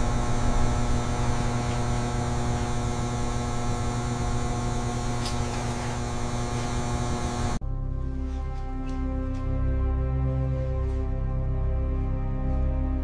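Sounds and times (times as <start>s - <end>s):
dense droning hum with hiss: 0.0s - 8.8s
soft music: 7.6s - 13.0s.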